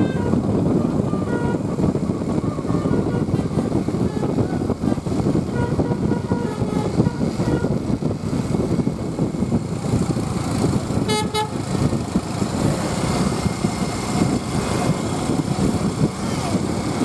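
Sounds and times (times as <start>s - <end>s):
traffic rumble: 0.0s - 17.0s
vehicle horn toots: 1.0s - 1.7s, 2.6s - 3.4s, 5.5s - 7.8s, 11.0s - 11.6s.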